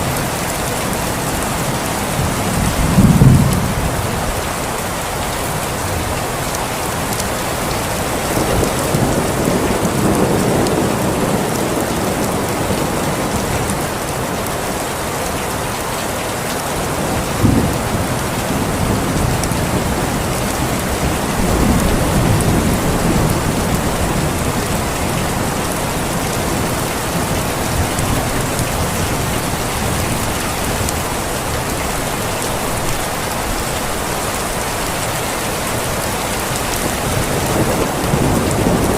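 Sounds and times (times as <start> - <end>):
thunder rumbling: 0.0 - 4.6, 17.0 - 34.2, 35.7 - 38.9
steady rain: 0.0 - 38.9.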